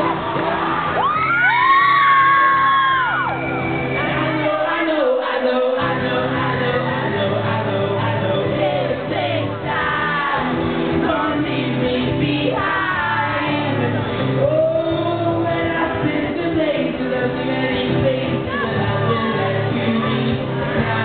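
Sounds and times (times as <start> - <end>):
live band playing: 0.0 - 4.8, 5.8 - 21.0
person singing: 4.1 - 21.0.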